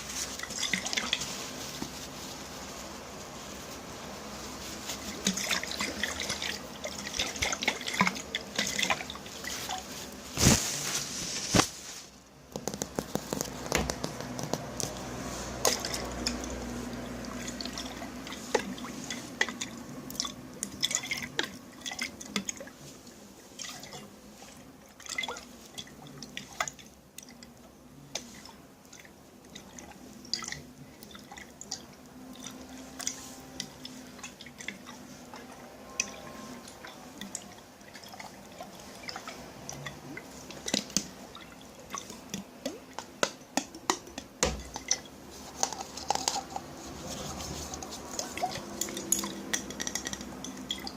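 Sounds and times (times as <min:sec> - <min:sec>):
liquid dripping in container: 0:12.5 - 0:22.7, 0:28.2 - 0:46.8, 0:47.8 - 0:50.9.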